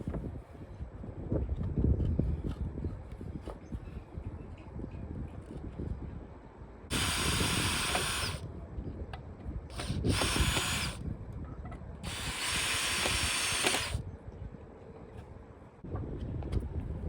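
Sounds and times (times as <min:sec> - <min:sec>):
power drill driving screws into wood: 0:06.9 - 0:08.4, 0:09.7 - 0:11.0, 0:12.0 - 0:14.0.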